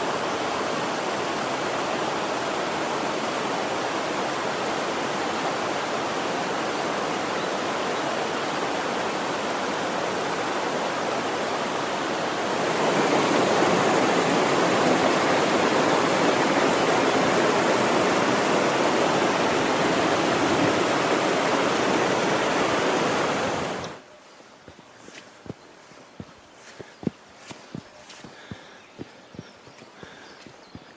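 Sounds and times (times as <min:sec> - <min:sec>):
stream rushing over rocks: 0:00.0 - 0:24.0.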